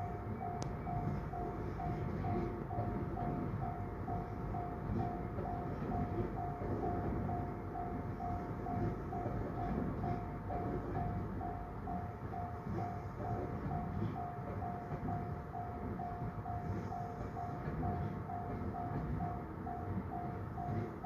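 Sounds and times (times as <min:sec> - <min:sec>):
electric train rumbling past: 0:00.0 - 0:21.0
level-crossing warning bell: 0:00.0 - 0:21.0.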